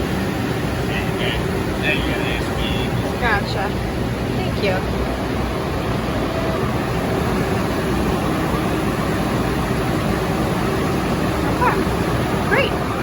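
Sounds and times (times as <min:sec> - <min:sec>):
faint steady hum: 0:00.0 - 0:13.0
machinery running: 0:00.0 - 0:13.0.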